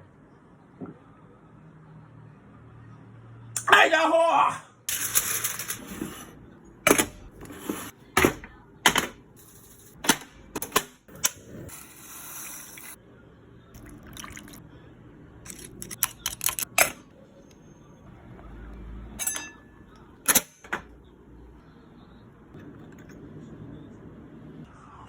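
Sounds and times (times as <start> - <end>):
shells and tableware clacking: 19.2 - 19.6.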